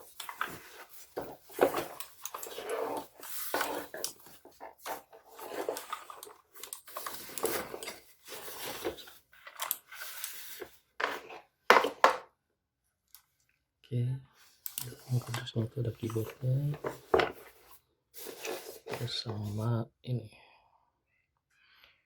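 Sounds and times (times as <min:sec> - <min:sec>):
cardboard rustling and scraping: 0:00.0 - 0:12.1, 0:14.9 - 0:19.6.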